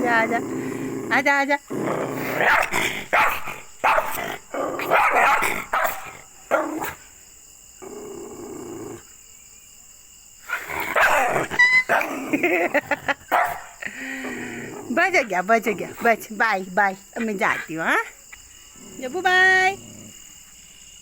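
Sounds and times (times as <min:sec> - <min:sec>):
dog barking angrily: 0:01.7 - 0:07.1, 0:10.5 - 0:16.0.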